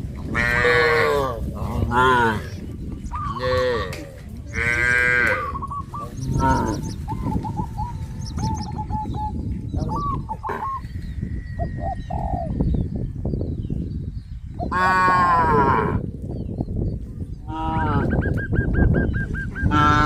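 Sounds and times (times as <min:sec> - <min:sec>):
steady low rumble: 0:00.0 - 0:14.8
small birds chirping: 0:01.6 - 0:14.8, 0:16.1 - 0:20.0
cattle mooing: 0:03.4 - 0:05.6, 0:14.7 - 0:16.0.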